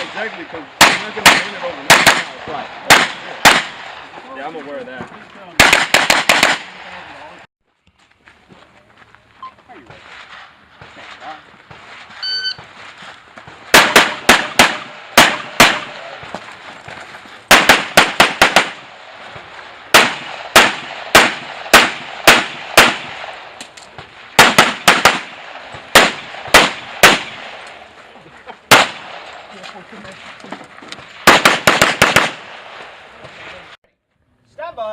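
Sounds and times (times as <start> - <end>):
pistol shots: 0.0 - 4.1, 5.6 - 6.9, 13.7 - 16.3, 17.5 - 19.2, 19.9 - 27.8, 28.7 - 29.5, 31.1 - 33.0.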